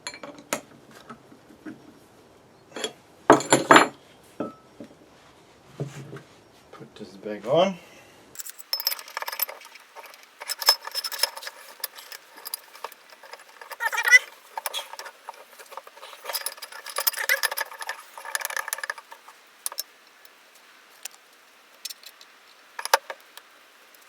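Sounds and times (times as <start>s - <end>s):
metal parts clinking: 8.4s - 19.9s.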